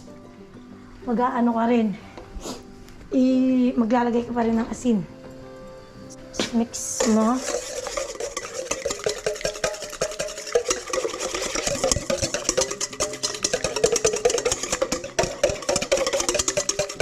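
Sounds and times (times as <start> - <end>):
music playing: 0.0 - 17.0
utensil stirring in a bowl: 6.9 - 17.0.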